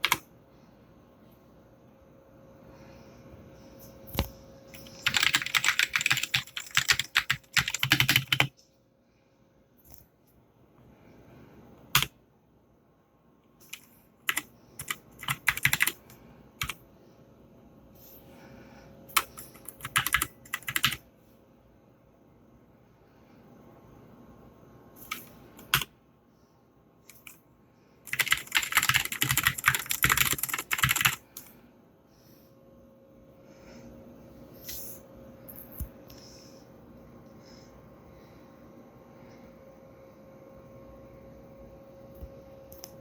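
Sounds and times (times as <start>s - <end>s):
typing on mechanical keyboard: 0.0s - 0.2s, 4.8s - 8.6s, 11.9s - 12.1s, 13.6s - 16.8s, 19.1s - 21.0s, 25.0s - 25.9s, 27.1s - 27.4s, 28.0s - 31.5s.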